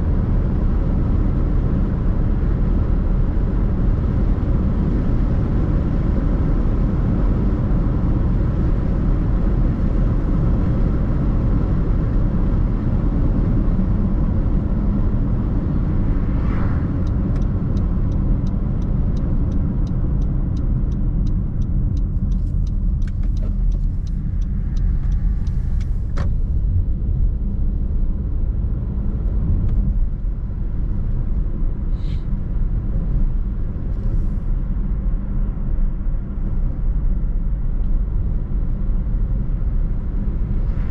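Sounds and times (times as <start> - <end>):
car engine and tyre rumble: 0.0 - 40.9
fast light ticks: 17.0 - 26.1.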